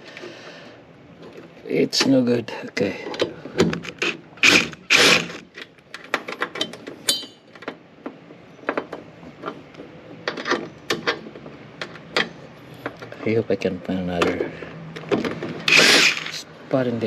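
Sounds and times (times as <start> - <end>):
tools clicking and rattling: 14.1 - 16.4
loud scraping rush: 15.6 - 16.4.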